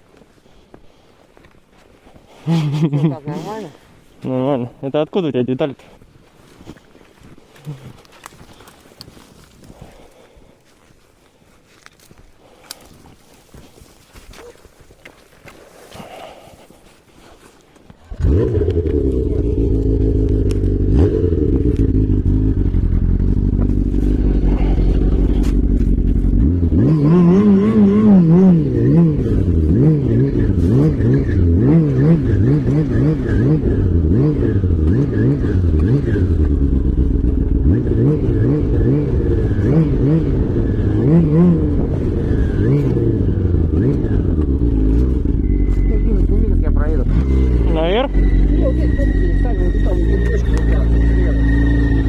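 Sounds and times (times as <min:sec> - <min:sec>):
snowmobile engine idling and revving: 0:18.0 - 0:52.0.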